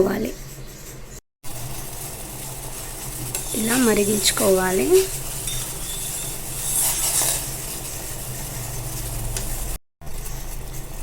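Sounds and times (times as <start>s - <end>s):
pot boiling with bubbling hiss: 1.4s - 11.0s.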